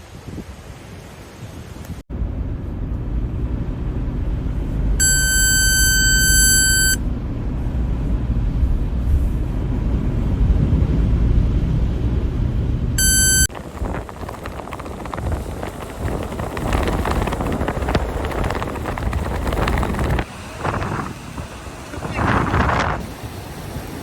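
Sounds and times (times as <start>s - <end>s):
steady low rumble: 2.1s - 24.0s
high buzzer-like tone: 5.0s - 7.0s, 13.0s - 13.5s.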